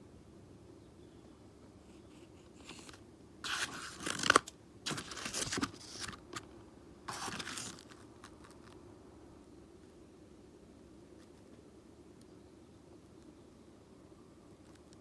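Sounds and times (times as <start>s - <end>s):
crinkling scraping handling noise: 1.9s - 8.8s.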